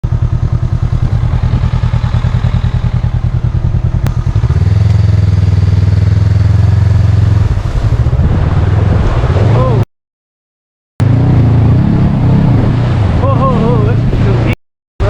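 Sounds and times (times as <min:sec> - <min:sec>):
motorcycle engine running: 0:00.0 - 0:09.8.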